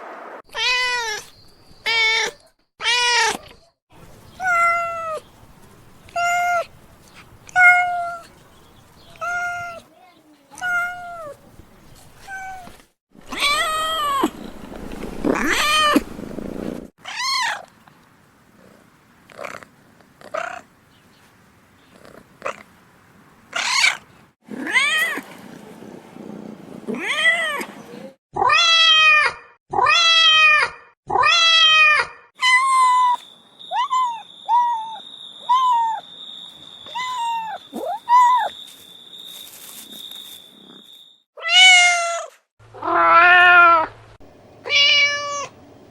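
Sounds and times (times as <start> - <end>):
cats meowing: 4.4 - 5.2, 7.5 - 8.3, 9.1 - 9.8, 12.3 - 14.4, 28.4 - 36.0, 36.8 - 38.6, 41.4 - 43.9, 44.6 - 45.5.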